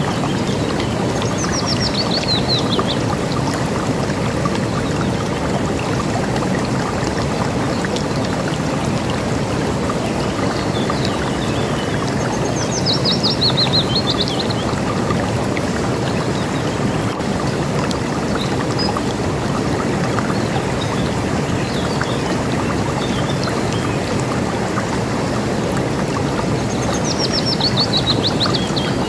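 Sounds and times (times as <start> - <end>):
river water rushing: 0.0 - 29.0
songbird singing: 10.5 - 14.8, 26.5 - 29.0.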